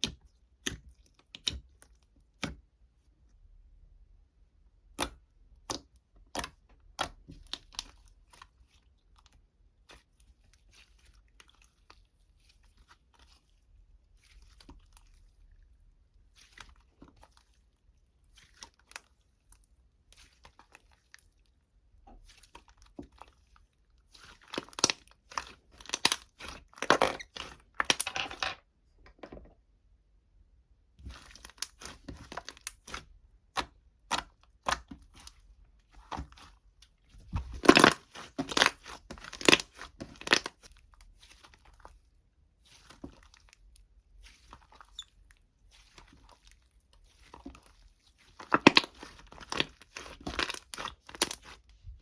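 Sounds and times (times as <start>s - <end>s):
crunching and crinkling: 31.0s - 52.0s.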